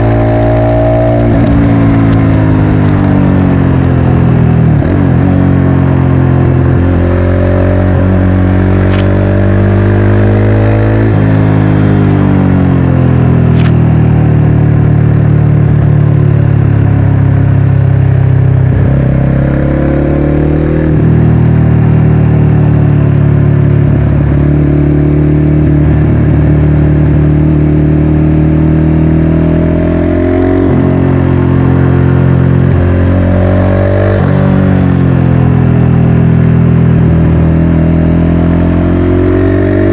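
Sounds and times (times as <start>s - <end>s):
motorcycle engine accelerating: 0.0s - 39.9s
brief clicks: 8.7s - 9.3s, 13.5s - 13.8s.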